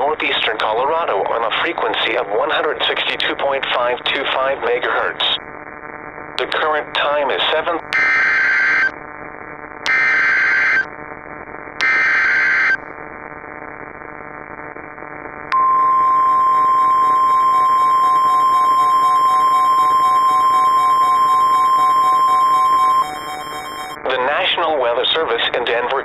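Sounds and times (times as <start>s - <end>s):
steady alarm tone: 15.5s - 24.0s
buzzy digital data bursts: 15.6s - 24.0s.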